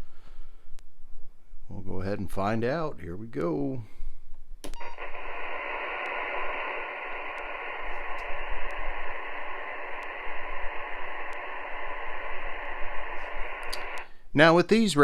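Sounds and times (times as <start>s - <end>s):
radio static hiss: 4.7s - 14.2s.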